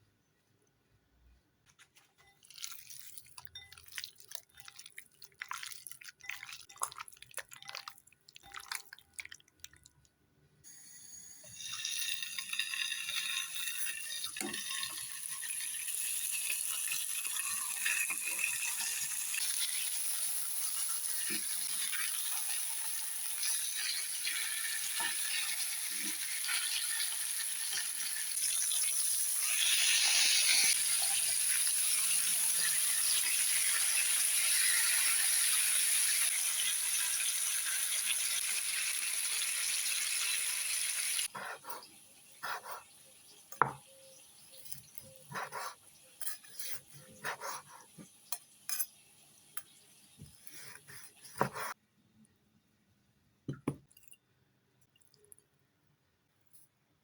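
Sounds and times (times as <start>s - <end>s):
meat sizzling on grill: 10.7s - 41.4s.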